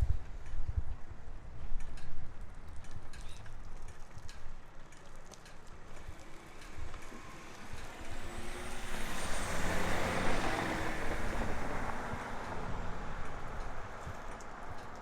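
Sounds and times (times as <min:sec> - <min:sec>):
vehicle passing by: 0:05.9 - 0:14.4.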